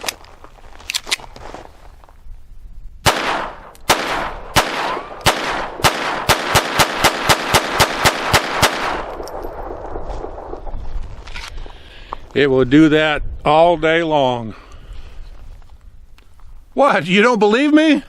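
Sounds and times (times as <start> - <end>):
pistol shots with ringing tail: 3.0 - 10.5.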